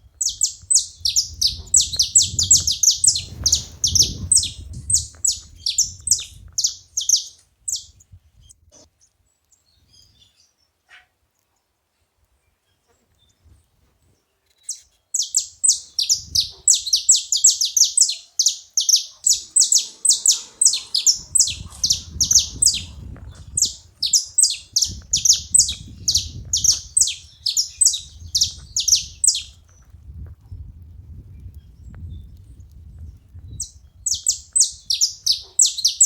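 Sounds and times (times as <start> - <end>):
finches singing chip notes: 15.2 - 22.9.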